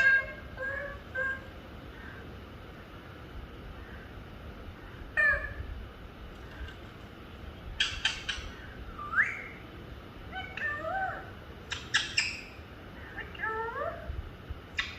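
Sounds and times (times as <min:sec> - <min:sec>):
parrot calling: 0:00.0 - 0:01.5, 0:05.1 - 0:05.6, 0:07.8 - 0:09.6, 0:10.3 - 0:12.6
parrot rising whistle: 0:09.0 - 0:09.6.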